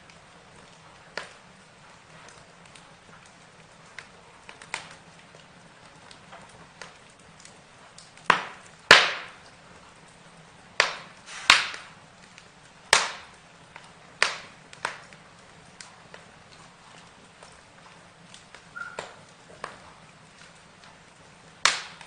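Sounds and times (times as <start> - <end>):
burning wood crackling: 0.0 - 22.0
fire hiss: 10.7 - 16.4.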